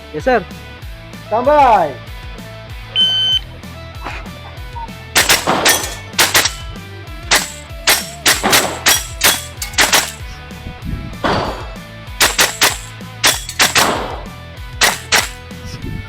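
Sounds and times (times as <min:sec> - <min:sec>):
start beep: 0:03.0 - 0:03.4
airsoft rifle shots: 0:05.2 - 0:10.3, 0:12.2 - 0:15.5.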